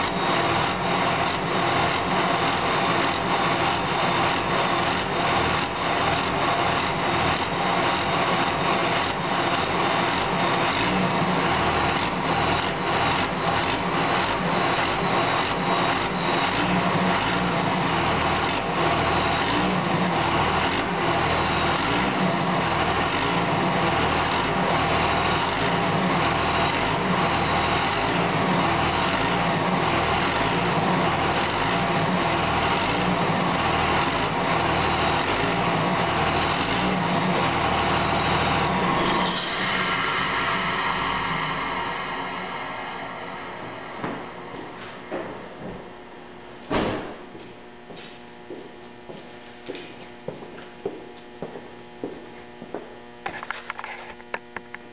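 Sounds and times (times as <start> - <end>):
diesel engine running: 0.0 - 53.9
turbo whistle: 12.8 - 43.8.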